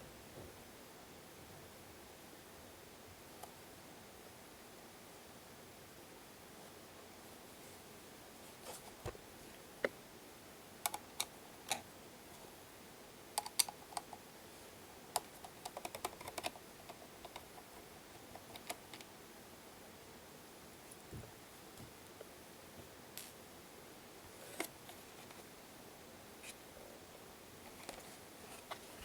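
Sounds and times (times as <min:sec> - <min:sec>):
faint steady hiss: 0:00.0 - 0:29.0.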